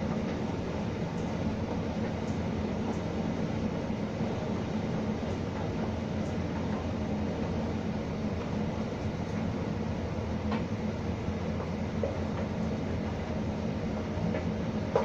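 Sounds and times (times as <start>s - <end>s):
tumble dryer humming: 0.0s - 15.0s.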